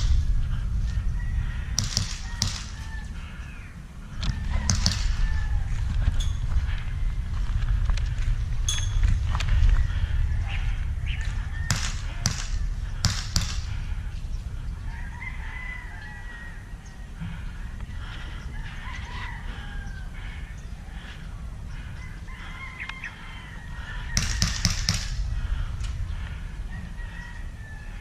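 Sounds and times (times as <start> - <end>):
birds calling: 0.0 - 28.0
steady low rumble: 0.0 - 28.0
airsoft gun firing: 1.8 - 2.9, 4.7 - 5.3, 11.7 - 13.8, 24.2 - 25.2.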